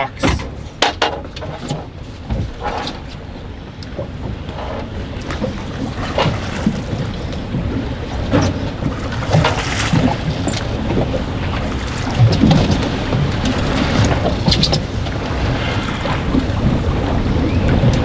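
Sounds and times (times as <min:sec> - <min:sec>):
strong wind buffeting microphone: 0:00.0 - 0:18.0.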